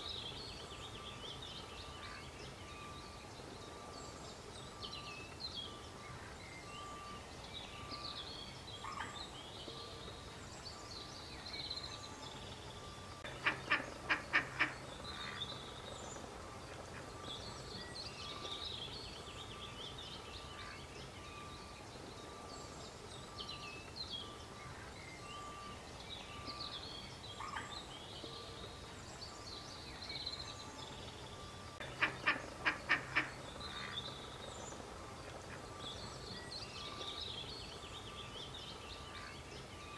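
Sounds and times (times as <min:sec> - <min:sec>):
small birds chirping faintly: 0:00.0 - 0:39.9
duck quacking: 0:13.4 - 0:15.4, 0:31.9 - 0:33.9.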